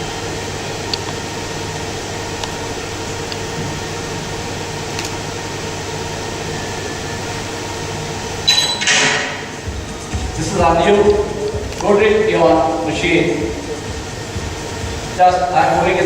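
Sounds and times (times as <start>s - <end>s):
room noise hiss and hum: 0.0s - 16.0s.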